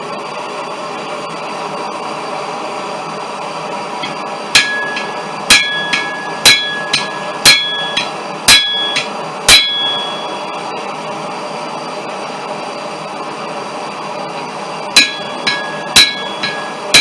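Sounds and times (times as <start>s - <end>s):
steady background hum: 0.0s - 17.0s
hammer striking steel on anvil: 4.0s - 10.5s, 15.0s - 17.0s.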